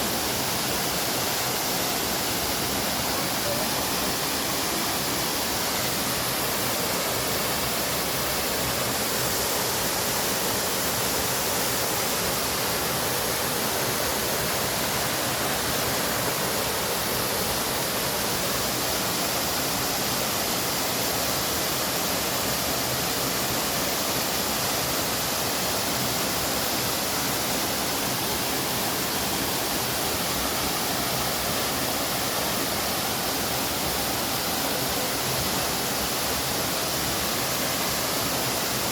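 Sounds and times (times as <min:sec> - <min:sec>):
waterfall rushing: 0:00.0 - 0:38.9.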